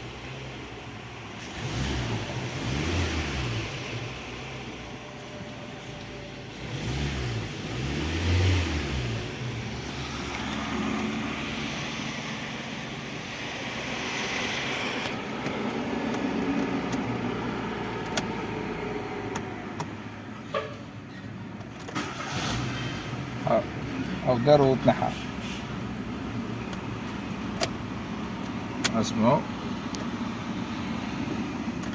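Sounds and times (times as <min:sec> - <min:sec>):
engine humming: 0:00.0 - 0:31.9
person talking: 0:23.5 - 0:25.2, 0:28.8 - 0:29.5.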